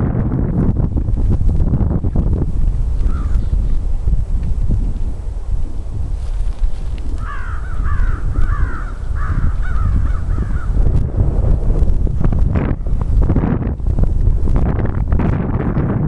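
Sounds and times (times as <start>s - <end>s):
steady low rumble: 0.0s - 16.0s
crow cawing: 3.1s - 3.4s, 7.2s - 10.8s.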